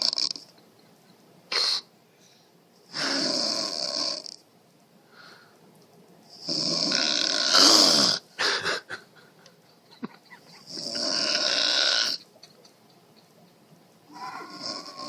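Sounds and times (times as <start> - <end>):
woman snoring loudly: 0.0 - 0.4, 2.9 - 4.3, 6.4 - 8.2, 10.7 - 12.2, 14.1 - 15.0.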